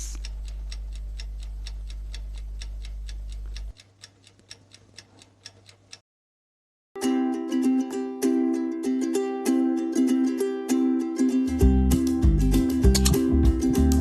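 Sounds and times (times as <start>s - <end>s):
clock ticking: 0.0s - 6.0s
ukulele music: 7.0s - 14.0s.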